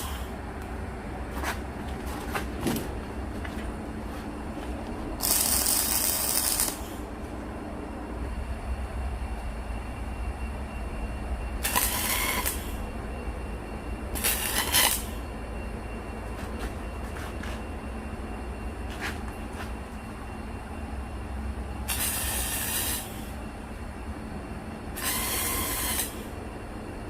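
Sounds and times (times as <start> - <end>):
steady low hum: 0.0 - 27.0
arc welding hiss: 5.2 - 7.0, 11.6 - 12.8, 14.2 - 15.2, 21.9 - 23.3, 25.0 - 26.3.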